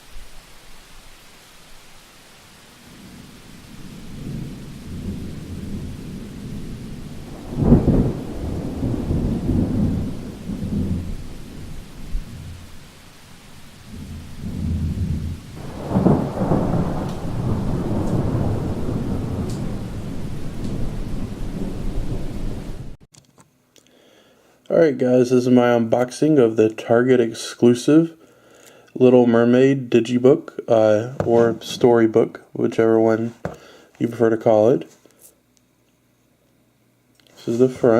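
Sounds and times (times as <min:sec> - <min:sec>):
steady hiss: 0:00.0 - 0:23.0, 0:23.7 - 0:37.9
deep rumbling peals: 0:03.0 - 0:23.0.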